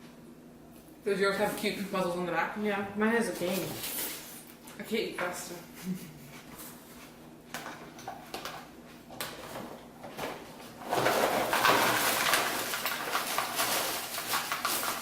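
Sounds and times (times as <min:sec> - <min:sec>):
cereal pouring into bowl: 0:11.1 - 0:15.0.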